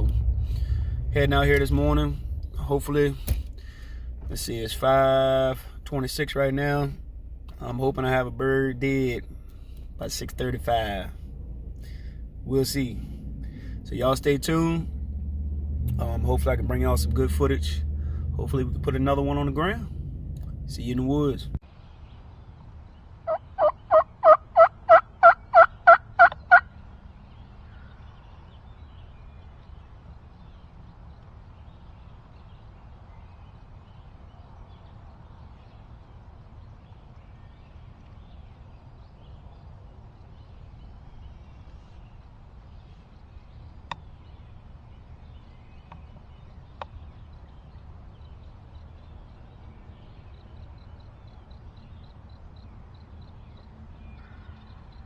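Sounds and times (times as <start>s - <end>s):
turkey yelps: 23.3s - 26.7s
faint ticks: 46.7s - 47.0s.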